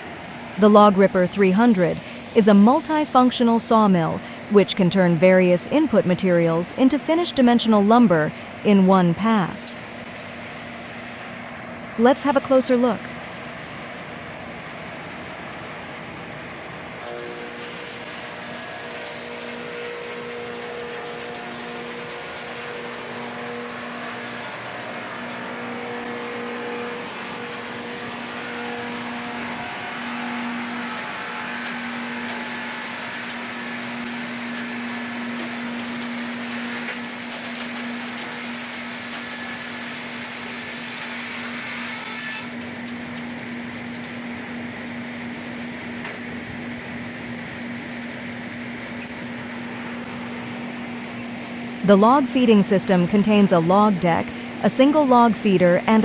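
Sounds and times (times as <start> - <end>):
sawmill mechanical hum: 0.0 - 56.0
saw cutting hiss: 17.0 - 42.6.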